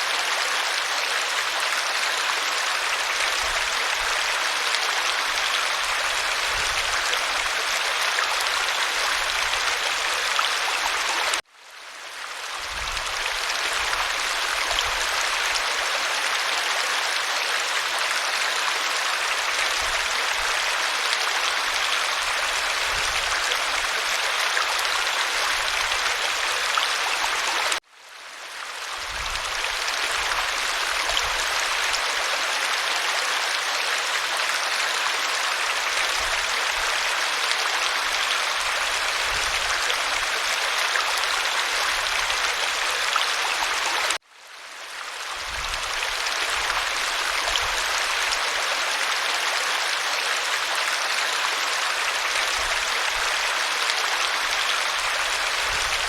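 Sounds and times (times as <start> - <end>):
waterfall rushing: 45.8 - 56.0.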